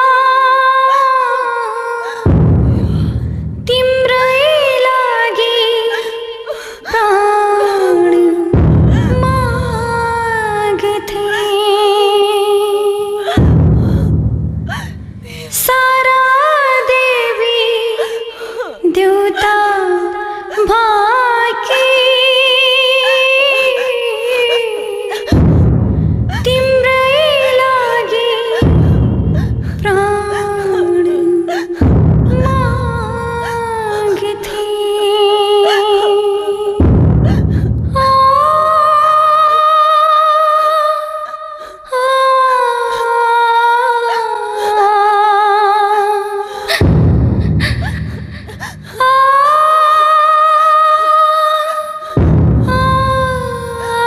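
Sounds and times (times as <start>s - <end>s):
woman singing long notes: 0.0s - 14.1s, 14.7s - 25.6s, 26.3s - 46.8s
low pulsing accompaniment: 2.3s - 4.9s, 8.4s - 11.4s, 12.5s - 16.9s, 25.2s - 35.8s, 36.7s - 39.2s, 46.8s - 50.0s, 52.2s - 54.0s
high voice singing melody: 26.3s - 37.4s.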